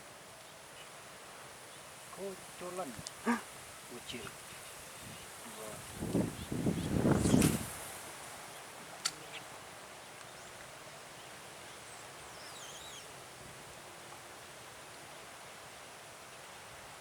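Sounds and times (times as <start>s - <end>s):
faint high chirping call: 12.2s - 13.1s.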